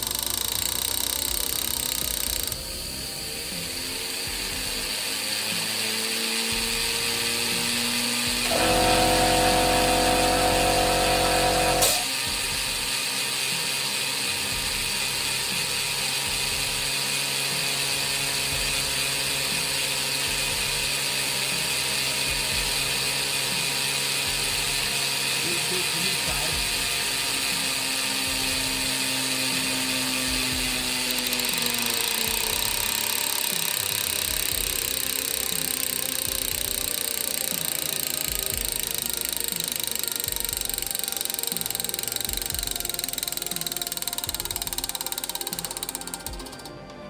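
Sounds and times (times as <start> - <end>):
steady pressure hissing: 0.0 - 46.7
solenoid valve chattering: 0.0 - 46.8
multi-tone hum: 0.0 - 47.0
sharp click: 30.4 - 46.9.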